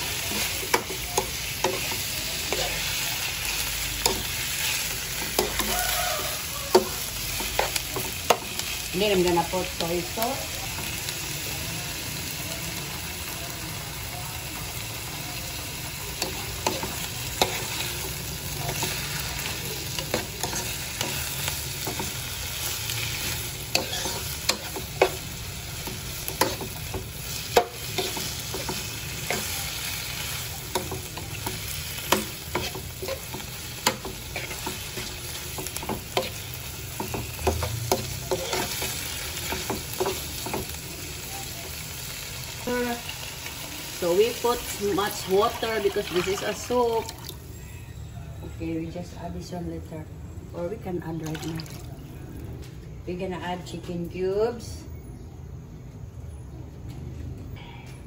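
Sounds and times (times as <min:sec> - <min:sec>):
chicken and onions sizzling in a pan: 0:00.0 - 0:47.0
utensil tapping and scraping a pan: 0:30.7 - 0:36.4, 0:37.0 - 0:40.8.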